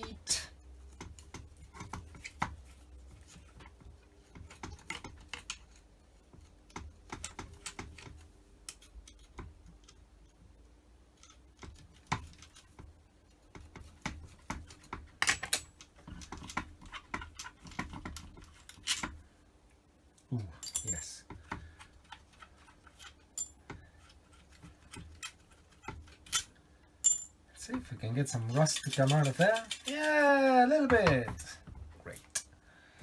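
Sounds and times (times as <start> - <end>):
metal parts clinking: 20.6 - 21.2, 23.4 - 23.6, 26.2 - 27.5.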